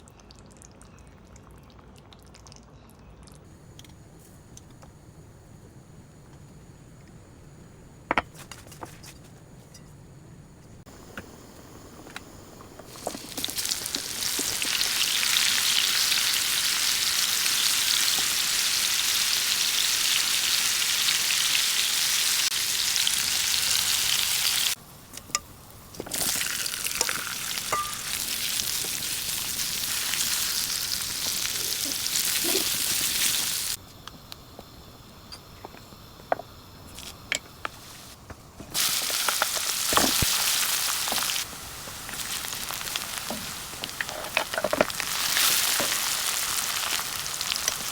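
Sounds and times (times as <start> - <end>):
food sizzling in hot oil: 10.8 - 33.8, 34.5 - 47.9.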